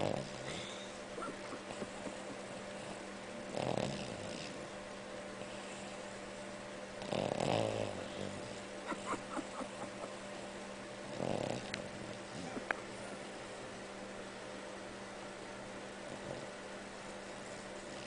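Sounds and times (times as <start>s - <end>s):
person snoring: 0.0s - 0.9s, 3.5s - 4.6s, 7.0s - 8.6s, 11.1s - 12.6s.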